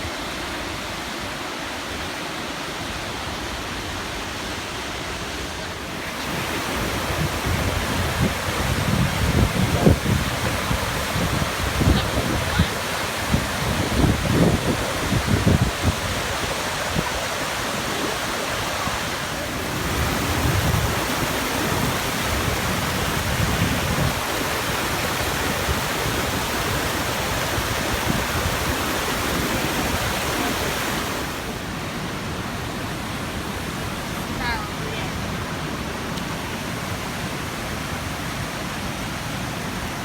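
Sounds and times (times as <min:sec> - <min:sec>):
waterfall roaring: 0:00.0 - 0:40.0
wind gusting on microphone: 0:02.7 - 0:40.0.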